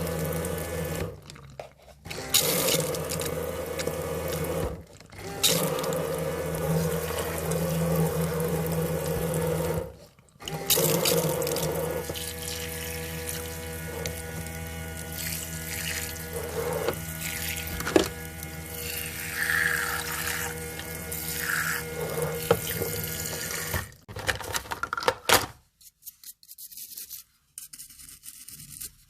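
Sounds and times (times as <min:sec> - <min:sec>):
toy motor hum: 0:11.0 - 0:23.8.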